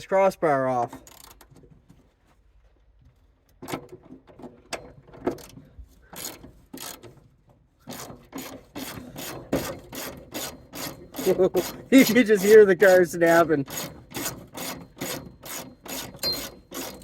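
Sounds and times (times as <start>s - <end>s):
wrench creaking on rusted bolts: 0.8s - 1.7s, 3.5s - 17.0s.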